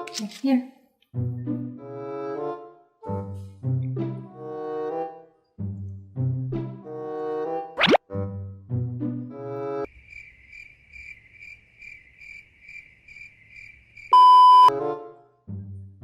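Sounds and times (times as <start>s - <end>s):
background music: 1.1s - 9.9s, 14.7s - 16.0s
crickets chirping: 9.9s - 14.7s
loud short beep: 14.2s - 14.7s.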